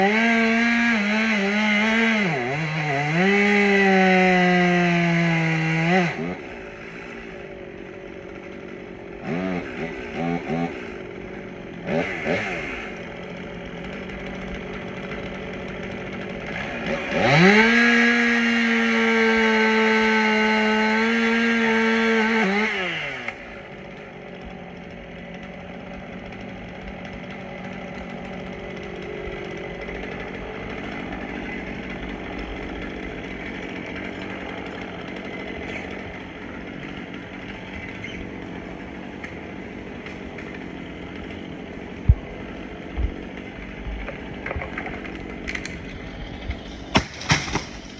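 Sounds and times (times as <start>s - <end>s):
chainsaw revving: 0.0s - 47.9s
sharp thumps: 42.0s - 47.9s.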